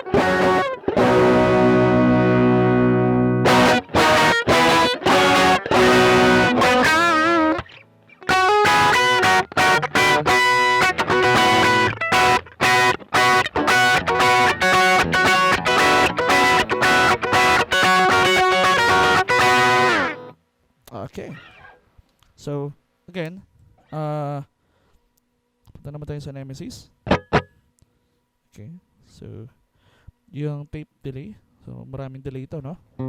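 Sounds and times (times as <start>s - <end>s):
distorted electric guitar: 0.0s - 20.4s, 27.1s - 27.5s.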